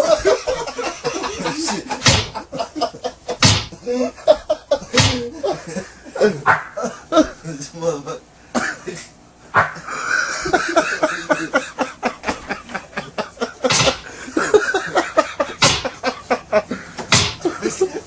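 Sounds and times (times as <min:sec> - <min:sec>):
men laughing: 0:00.0 - 0:07.6, 0:08.6 - 0:18.0
loud sharp smacks: 0:02.0 - 0:02.4, 0:03.4 - 0:03.8, 0:05.0 - 0:05.2, 0:06.5 - 0:06.8, 0:09.6 - 0:09.8, 0:13.7 - 0:14.1, 0:15.6 - 0:15.9, 0:17.1 - 0:17.4.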